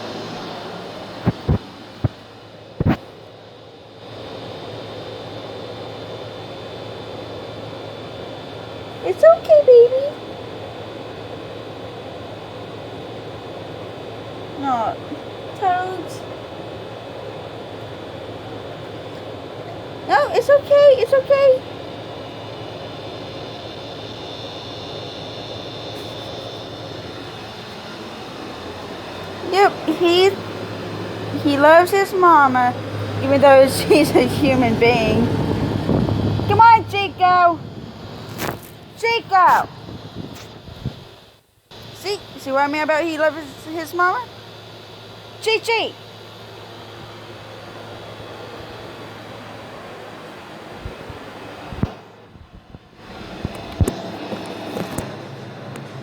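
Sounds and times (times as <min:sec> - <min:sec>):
faint high whine: 0:00.0 - 0:56.0
steady low hum: 0:00.0 - 0:56.0
microphone handling thuds: 0:01.2 - 0:02.2, 0:02.8 - 0:03.1.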